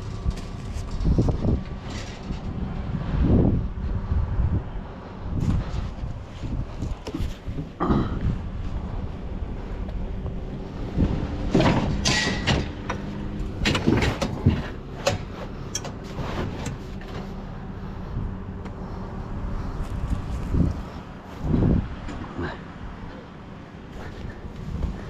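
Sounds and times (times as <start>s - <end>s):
knocks and rattles: 0.0s - 3.2s, 9.9s - 17.4s
vehicle engine running: 0.0s - 25.0s.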